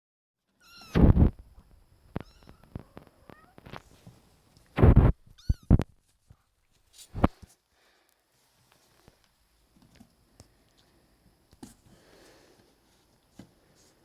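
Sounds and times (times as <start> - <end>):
kitten mewing: 4.8 - 5.9.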